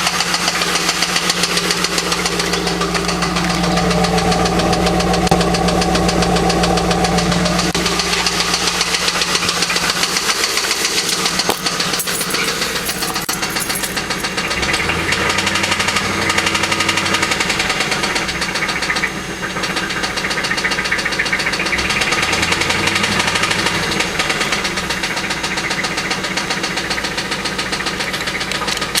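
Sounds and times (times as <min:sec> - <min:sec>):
car engine running: 0:00.0 - 0:24.8
rapid engine knocking tap: 0:24.4 - 0:29.0.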